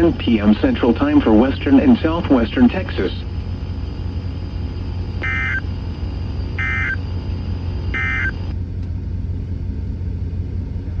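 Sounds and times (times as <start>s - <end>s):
steady low rumble: 0.0s - 11.0s
warbling data bursts: 0.2s - 8.5s.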